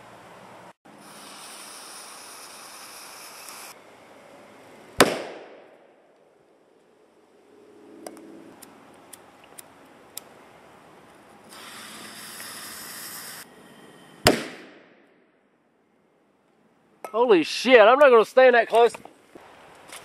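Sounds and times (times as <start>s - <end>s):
lit fuse hissing: 0.9s - 3.8s, 11.4s - 13.5s
firecracker bang: 5.0s - 6.0s, 14.2s - 15.0s.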